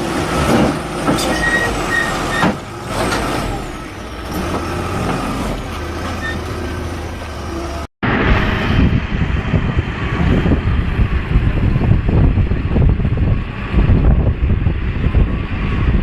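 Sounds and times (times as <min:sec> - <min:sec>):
diesel engine running: 0:00.0 - 0:16.0
wind on microphone: 0:08.0 - 0:16.0.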